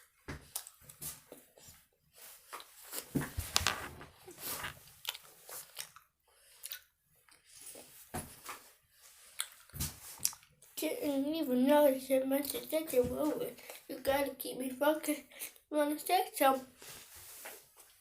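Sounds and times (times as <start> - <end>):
person chewing candy: 4.2 - 7.9, 9.2 - 10.7.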